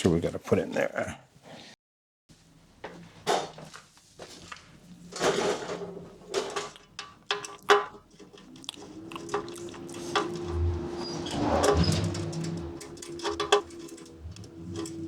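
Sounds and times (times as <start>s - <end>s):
metal hardware clinking and scraping: 5.2s - 15.0s.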